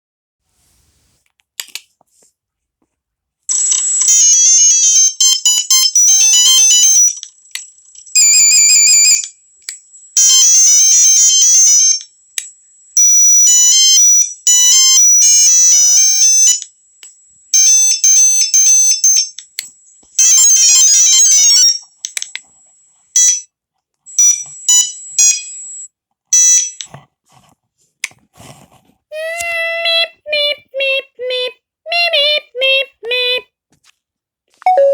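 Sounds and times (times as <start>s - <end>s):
monophonic phone ringtones: 3.5s - 7.2s, 8.1s - 9.2s, 20.2s - 21.9s, 23.2s - 23.5s, 24.1s - 26.8s, 34.7s - 34.9s
short single beeps: 34.6s - 34.9s.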